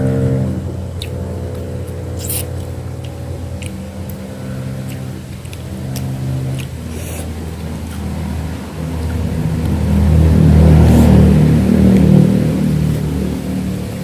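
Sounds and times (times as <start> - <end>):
low engine hum: 0.0 - 14.0
eating clicks and crunches: 0.9 - 10.1.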